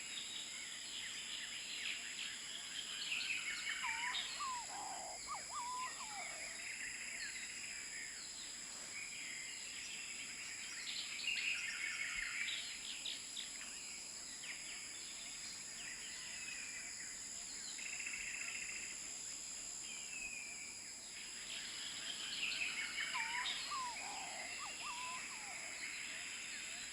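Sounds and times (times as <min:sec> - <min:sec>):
birds chirping and trilling: 0:03.3 - 0:06.6, 0:22.1 - 0:26.9.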